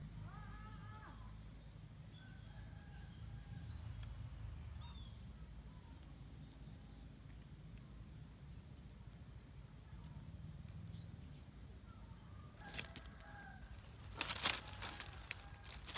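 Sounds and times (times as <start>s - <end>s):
steady low rumble: 3.8s - 15.9s.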